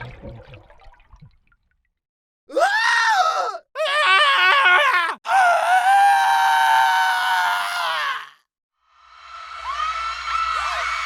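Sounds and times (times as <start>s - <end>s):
high-pitched screams: 9.3s - 11.0s.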